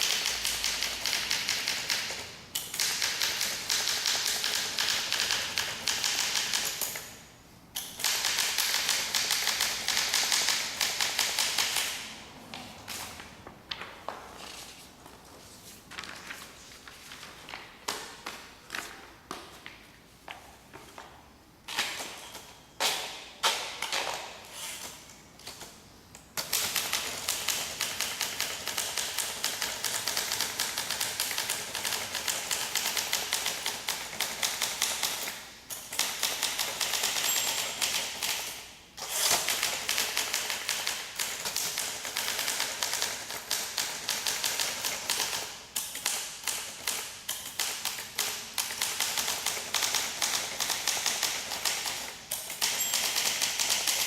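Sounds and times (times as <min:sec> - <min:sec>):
typewriter typing: 0:00.0 - 0:07.1, 0:07.8 - 0:12.1, 0:26.4 - 0:54.0.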